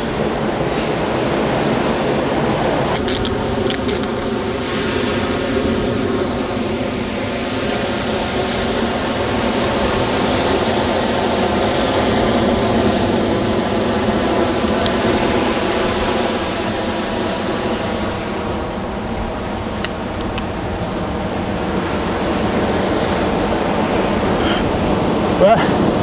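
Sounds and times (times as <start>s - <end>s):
surf rushing: 0.0s - 26.0s.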